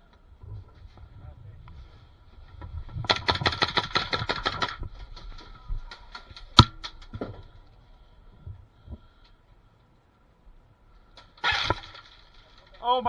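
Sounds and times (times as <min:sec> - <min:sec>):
bb impacts: 0:02.8 - 0:07.8
loud sharp crack: 0:06.4 - 0:07.2, 0:11.2 - 0:12.8
airsoft gunfire: 0:06.6 - 0:06.9.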